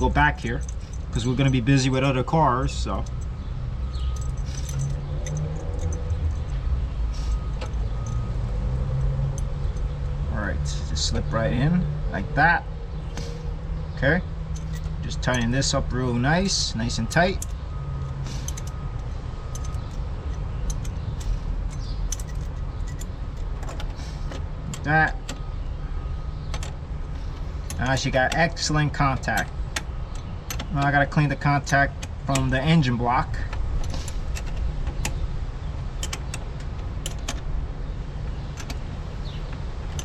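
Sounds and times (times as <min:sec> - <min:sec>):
steady low rumble: 0:00.0 - 0:40.0
wrench metallic clicks: 0:14.5 - 0:15.8, 0:16.4 - 0:25.5, 0:26.5 - 0:37.5, 0:38.3 - 0:40.0
metallic clicks of hand tools: 0:19.5 - 0:25.4.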